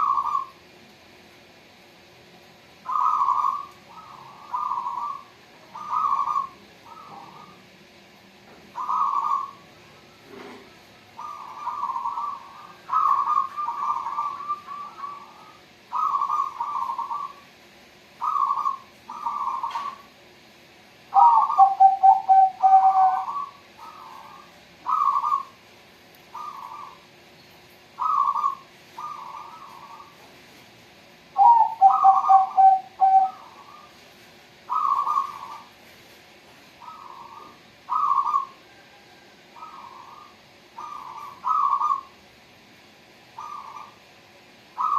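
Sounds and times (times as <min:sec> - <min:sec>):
doves cooing: 0:00.0 - 0:00.6, 0:02.9 - 0:07.7, 0:08.7 - 0:17.5, 0:18.2 - 0:20.1, 0:21.1 - 0:25.6, 0:26.3 - 0:27.1, 0:28.0 - 0:30.2, 0:31.4 - 0:34.0, 0:34.7 - 0:35.7, 0:36.8 - 0:42.2, 0:43.4 - 0:44.1.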